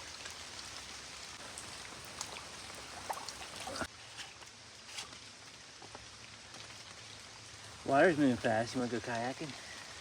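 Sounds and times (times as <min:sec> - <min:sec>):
creek water running: 0:00.0 - 0:10.0
rain hiss: 0:00.0 - 0:10.0.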